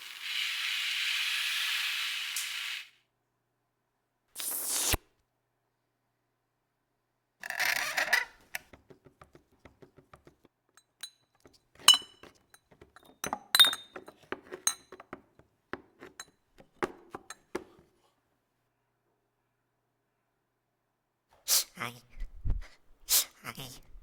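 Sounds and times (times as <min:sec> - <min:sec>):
sharp glassy clinks: 0:10.8 - 0:14.0.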